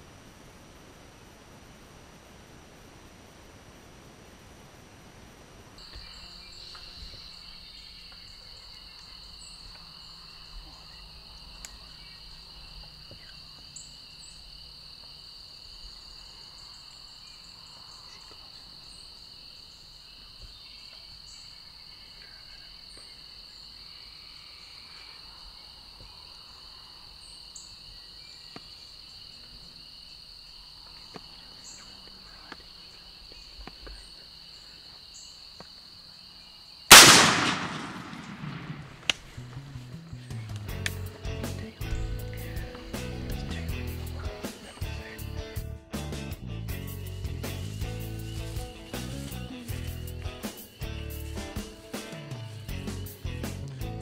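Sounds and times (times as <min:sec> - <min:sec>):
high-pitched insect chorus: 0:05.8 - 0:36.9, 0:46.9 - 0:53.7
light ticks: 0:40.6 - 0:41.0.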